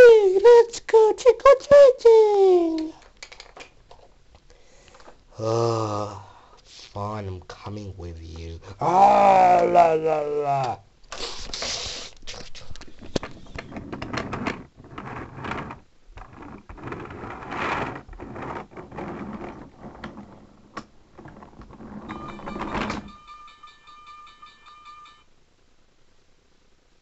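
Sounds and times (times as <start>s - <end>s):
steady high tones: 22.1s - 25.3s.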